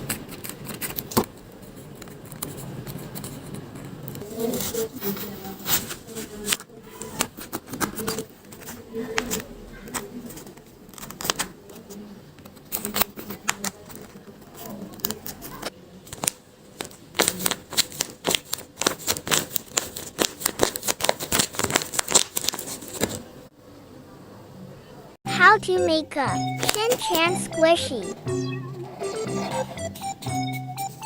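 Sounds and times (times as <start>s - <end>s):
paper and craft tools clicking: 0.0s - 23.2s, 26.6s - 27.2s.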